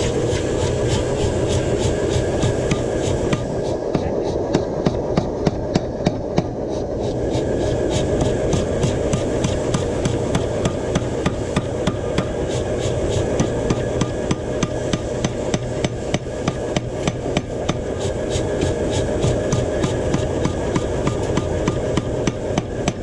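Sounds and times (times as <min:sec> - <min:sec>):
steady low rumbling: 0:00.0 - 0:22.8
hammer blows on hot steel: 0:00.0 - 0:23.0.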